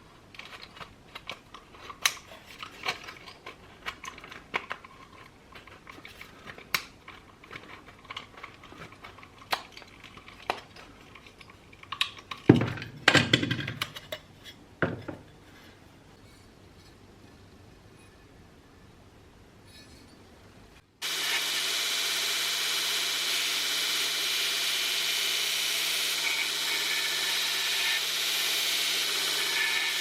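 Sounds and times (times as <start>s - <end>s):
metal parts and tools clinking: 0.3s - 15.4s.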